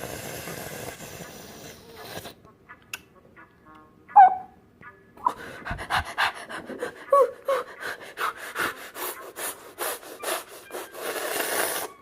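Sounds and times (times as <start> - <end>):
person panting rapidly: 5.3 - 11.2.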